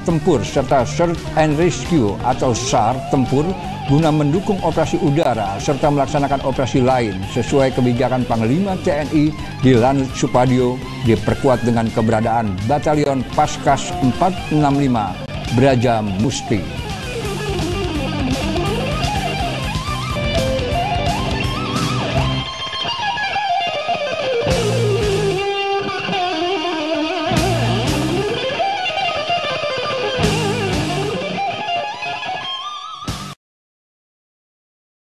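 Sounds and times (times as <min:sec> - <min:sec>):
bass and drums: 0:00.0 - 0:22.7, 0:24.5 - 0:25.5, 0:27.3 - 0:28.5, 0:30.2 - 0:31.3, 0:33.1 - 0:33.4
electric guitar melody: 0:00.0 - 0:33.4.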